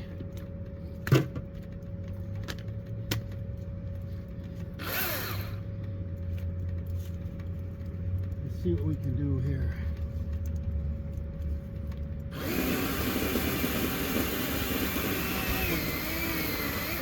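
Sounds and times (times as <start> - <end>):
steady low hum: 0.0 - 17.0
electric chainsaw motor running: 4.8 - 5.6, 12.3 - 17.0.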